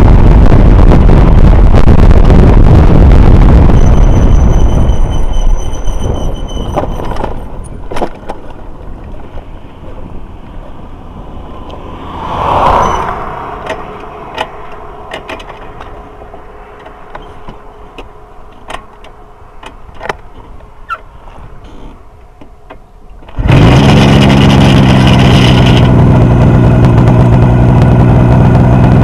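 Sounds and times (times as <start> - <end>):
motor vehicle noise: 0.0 - 29.0
vehicle passing: 9.4 - 22.6.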